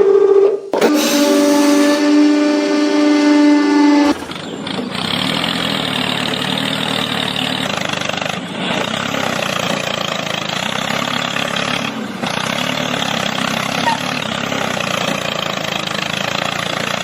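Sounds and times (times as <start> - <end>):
high-pitched tone: 0.7 - 4.2
engine running: 0.8 - 17.0.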